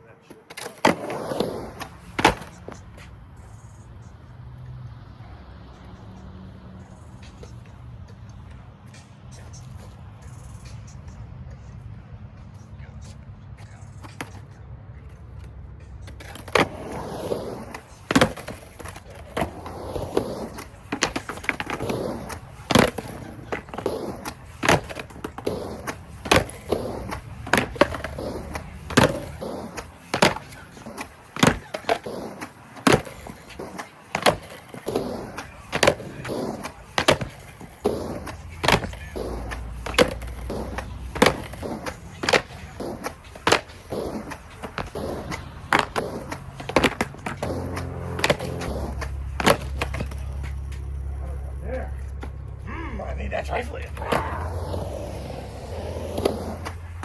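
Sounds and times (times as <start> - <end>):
skateboard wheels rolling: 0.0 - 57.0
skateboard deck clacking on ground: 0.2 - 3.2, 13.0 - 51.1, 53.9 - 57.0.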